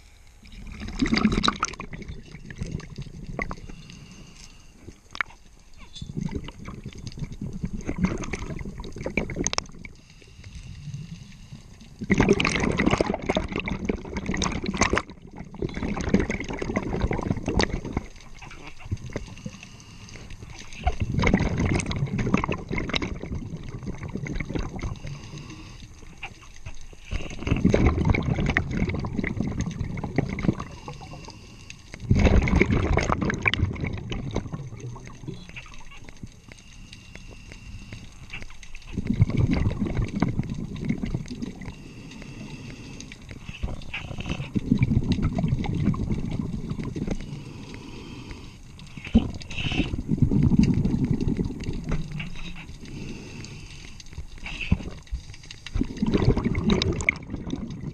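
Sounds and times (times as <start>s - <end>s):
gurgling bubble bursts underwater: 0.4s - 3.8s, 5.1s - 10.0s, 11.8s - 19.6s, 20.4s - 26.3s, 26.9s - 31.3s, 31.9s - 36.5s, 38.4s - 53.6s, 54.2s - 57.9s
breathing through a regulator: 2.2s - 5.1s, 9.8s - 12.1s, 19.1s - 21.3s, 24.4s - 26.2s, 30.3s - 32.1s, 35.0s - 38.6s, 41.4s - 44.8s, 46.4s - 50.4s, 51.0s - 55.4s.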